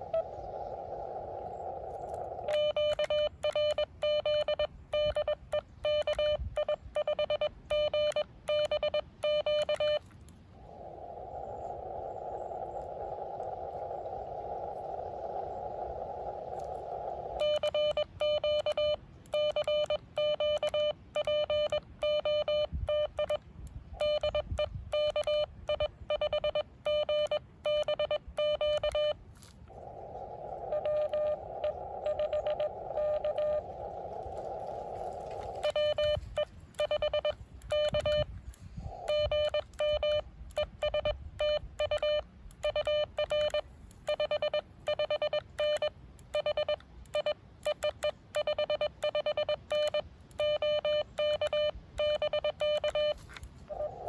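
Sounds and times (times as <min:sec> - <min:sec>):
radio receiver hiss: 0:00.0 - 0:04.2, 0:09.6 - 0:18.8, 0:28.8 - 0:40.8
morse code keyed tone: 0:02.4 - 0:10.0, 0:17.4 - 0:23.4, 0:24.0 - 0:29.2, 0:30.7 - 0:38.4, 0:39.0 - 0:53.8.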